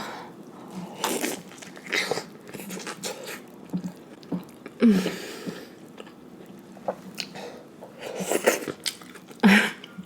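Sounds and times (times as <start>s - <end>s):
chewing and lip smacking: 8.5s - 10.0s.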